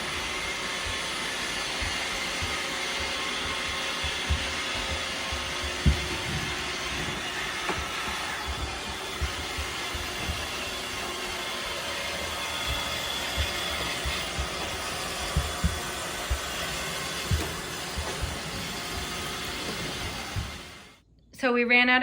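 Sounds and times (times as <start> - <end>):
robot vacuum running: 0.0 - 21.0.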